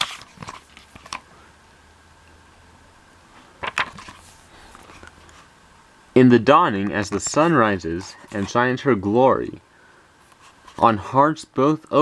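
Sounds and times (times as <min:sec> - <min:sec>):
book pages rustling: 0:00.0 - 0:01.2, 0:03.6 - 0:05.5, 0:08.0 - 0:08.6, 0:10.2 - 0:10.8
faint low hum: 0:00.0 - 0:12.0.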